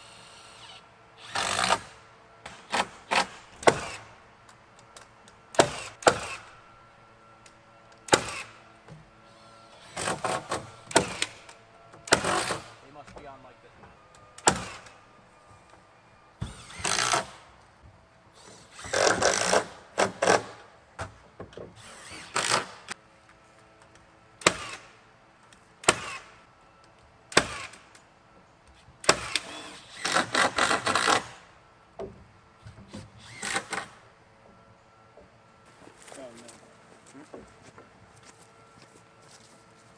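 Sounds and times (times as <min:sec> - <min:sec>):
power drill bursts: 0:00.0 - 0:02.0, 0:09.3 - 0:13.4, 0:16.4 - 0:17.4, 0:18.4 - 0:20.6, 0:21.8 - 0:23.0, 0:24.4 - 0:24.9, 0:27.3 - 0:27.9, 0:29.0 - 0:31.5, 0:33.2 - 0:34.0.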